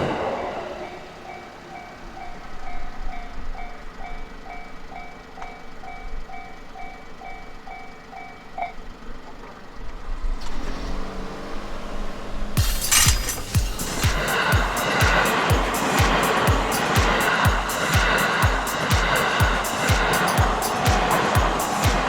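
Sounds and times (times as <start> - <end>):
electronic crossing warning bell: 1.2 - 9.1.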